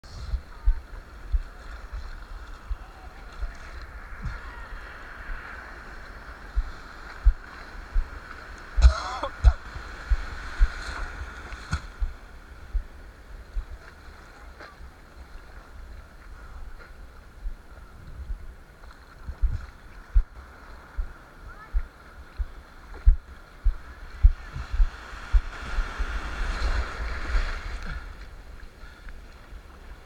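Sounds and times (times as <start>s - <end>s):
wind buffeting microphone: 0.0s - 28.9s
surf hiss: 0.1s - 30.0s.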